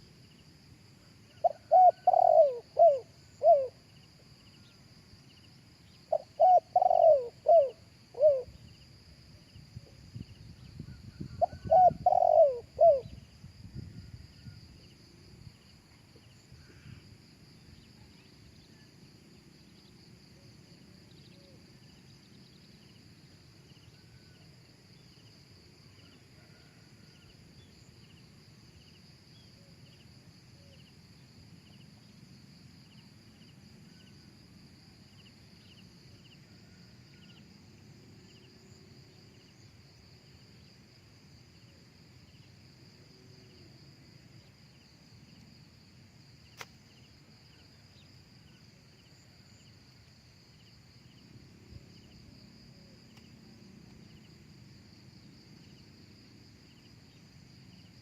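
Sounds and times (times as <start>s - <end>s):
high insect drone: 0.0s - 58.0s
dove cooing: 1.4s - 3.8s, 6.1s - 8.5s, 11.2s - 13.2s.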